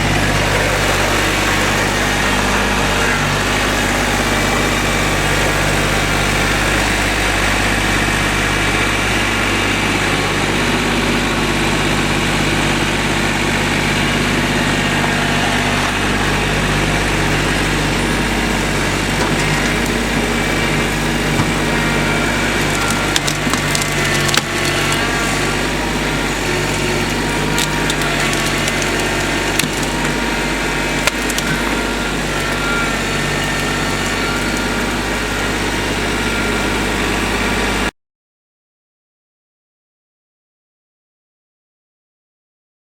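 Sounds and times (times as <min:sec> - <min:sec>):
engine running: 0:00.0 - 0:37.9
wood cracks and knocks: 0:21.3 - 0:35.0.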